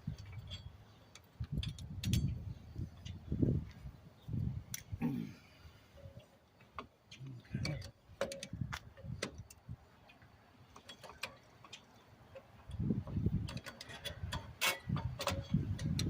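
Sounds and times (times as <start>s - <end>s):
metallic clicks of tools: 10.7s - 16.0s.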